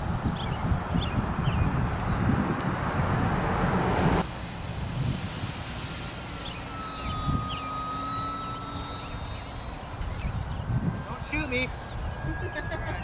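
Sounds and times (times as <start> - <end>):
wind rumbling on microphone: 0.0 - 6.2, 7.0 - 13.0
electric model plane motor whine: 4.6 - 13.0.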